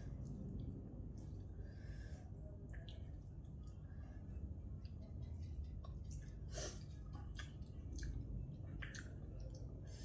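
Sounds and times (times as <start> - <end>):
chewing and wet mouth sounds: 2.7 - 3.9, 4.8 - 10.0.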